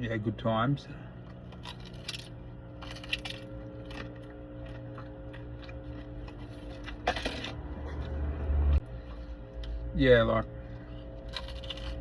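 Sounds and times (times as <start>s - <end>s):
steady low hum: 0.0s - 12.0s
person chewing: 1.2s - 8.2s, 10.9s - 12.0s
pastry crunches and mouth clicks: 1.3s - 7.5s, 11.2s - 12.0s.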